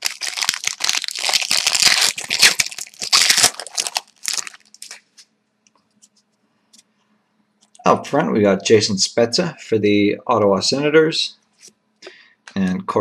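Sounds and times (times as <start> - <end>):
wrapper tearing and crinkling: 0.0 - 5.3.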